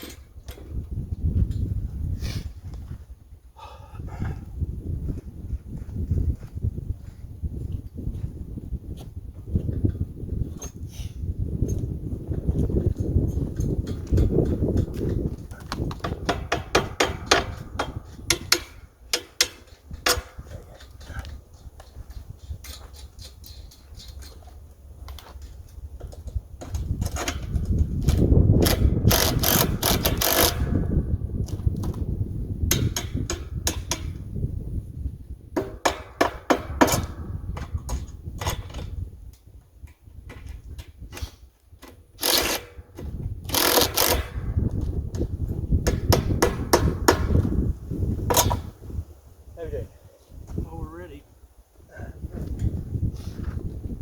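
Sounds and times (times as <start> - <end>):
metal parts clanking and knocking: 0.0 - 0.7, 12.9 - 30.8, 41.8 - 44.5.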